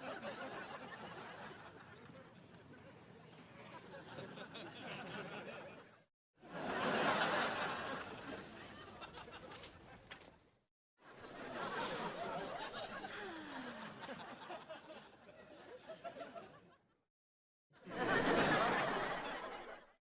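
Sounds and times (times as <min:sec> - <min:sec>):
studio audience laughter: 0:00.0 - 0:02.1, 0:03.7 - 0:09.7, 0:11.1 - 0:16.8, 0:17.8 - 0:20.0.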